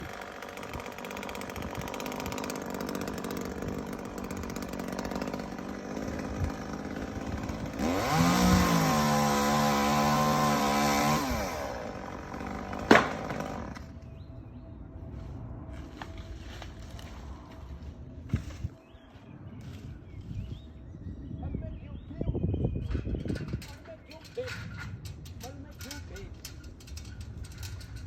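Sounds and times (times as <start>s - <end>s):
chainsaw idling and revving: 0.0s - 14.0s
sharp crack: 12.8s - 13.5s.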